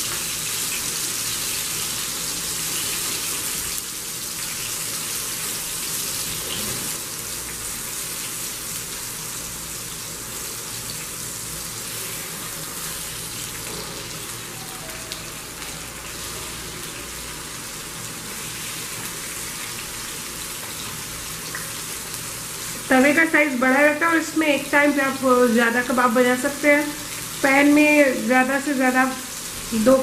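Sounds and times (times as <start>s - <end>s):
meat sizzling in oil: 0.0s - 30.0s.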